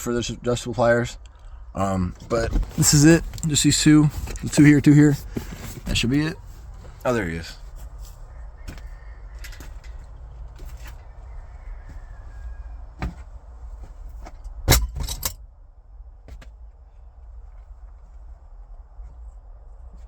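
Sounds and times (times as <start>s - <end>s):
low background rumble: 0.0s - 20.0s
metal hand tools clinking: 14.7s - 15.4s.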